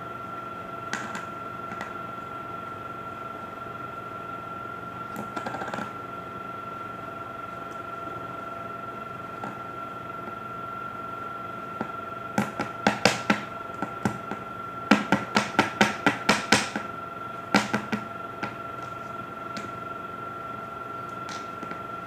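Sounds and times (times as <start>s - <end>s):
electrical hum with high whine: 0.0s - 22.0s
taps on hard tabletop: 12.4s - 16.9s, 17.5s - 18.6s.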